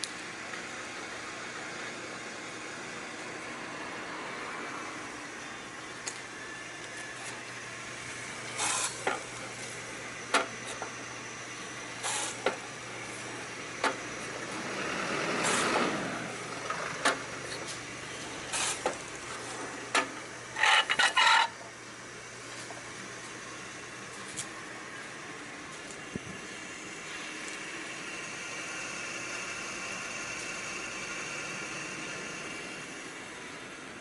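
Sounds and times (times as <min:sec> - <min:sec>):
bread slicer humming: 0:06.5 - 0:33.6.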